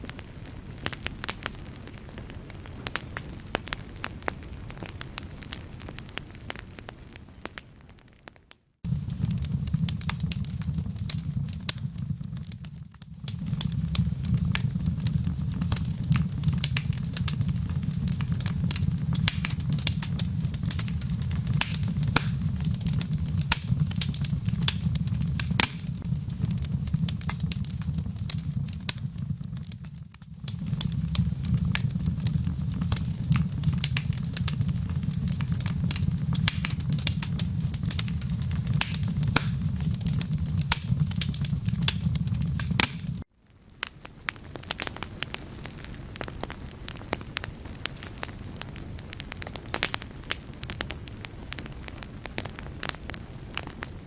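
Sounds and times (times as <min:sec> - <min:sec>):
wood fire crackling: 0:00.0 - 0:54.0
steady low rumble: 0:08.9 - 0:43.3.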